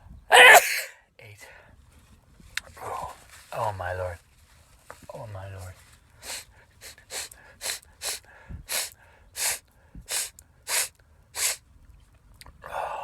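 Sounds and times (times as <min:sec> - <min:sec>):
man gasping before a sneeze: 0:00.3 - 0:01.0, 0:06.2 - 0:11.6.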